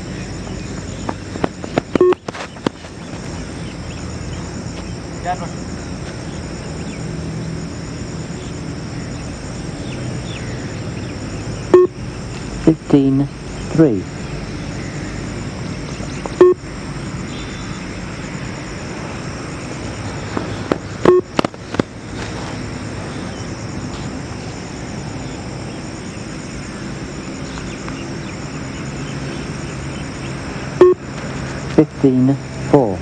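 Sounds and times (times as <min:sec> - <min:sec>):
outdoor background hiss: 0:00.0 - 0:33.0
sharp sounds cluster: 0:00.0 - 0:33.0
short beeps: 0:02.0 - 0:02.2, 0:11.7 - 0:12.0, 0:16.4 - 0:16.6, 0:21.0 - 0:21.3, 0:30.8 - 0:31.0.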